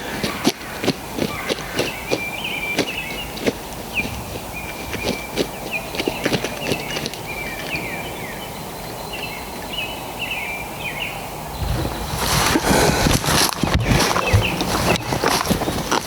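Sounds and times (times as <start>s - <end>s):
outdoor background noise: 0.0s - 16.0s
songbirds chirping: 0.0s - 16.0s
loud rustling and knocking: 11.6s - 16.0s.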